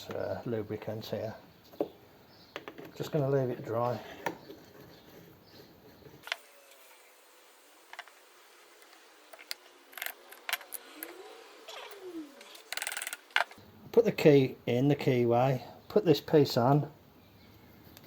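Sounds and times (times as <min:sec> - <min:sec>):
small steel parts clinking: 0:12.4 - 0:13.6.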